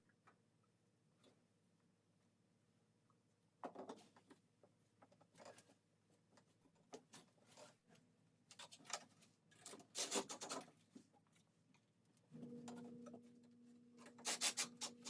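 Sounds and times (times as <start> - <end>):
scraping and clicking on fittings: 6.3 - 11.0, 14.0 - 15.0
rubbing scrapes: 14.2 - 15.0.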